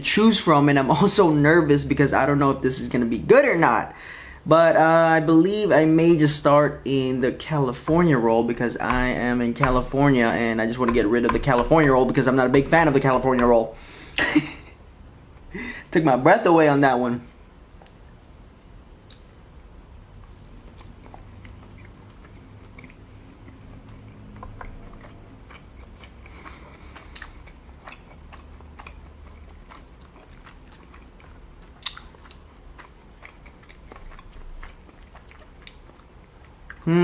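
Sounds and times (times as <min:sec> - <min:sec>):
wet chewing with mouth clicks: 0:06.3 - 0:15.2, 0:20.2 - 0:37.0.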